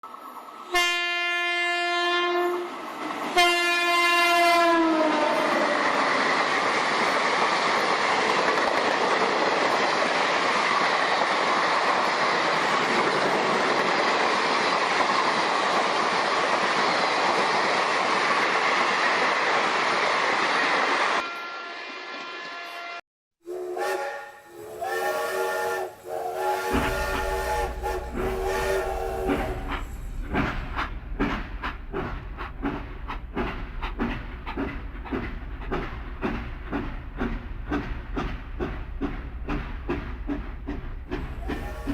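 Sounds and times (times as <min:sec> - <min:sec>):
train passing with rush and clatter: 0:00.0 - 0:41.9
train horn blasts: 0:00.7 - 0:02.8, 0:03.4 - 0:05.6, 0:21.2 - 0:29.9, 0:41.4 - 0:41.9.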